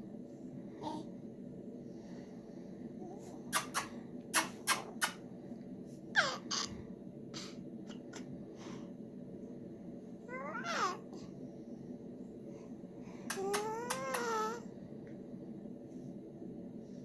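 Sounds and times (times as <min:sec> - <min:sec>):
lip-smacking kisses: 0:03.5 - 0:05.2, 0:13.3 - 0:14.4.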